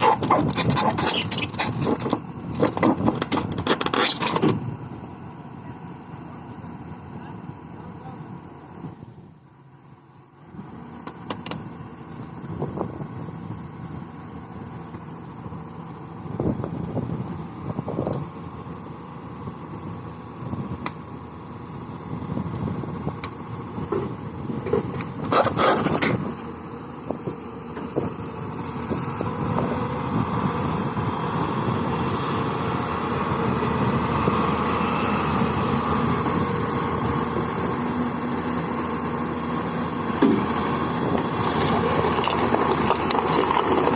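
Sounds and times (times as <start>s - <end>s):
excavator diesel engine running: 0.0s - 43.9s.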